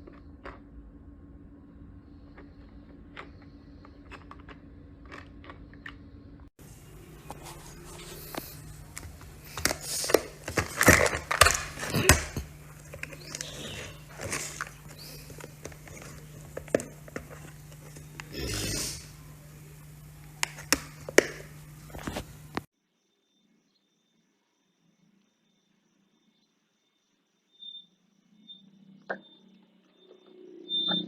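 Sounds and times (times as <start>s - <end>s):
steady low hum: 0.0s - 22.7s.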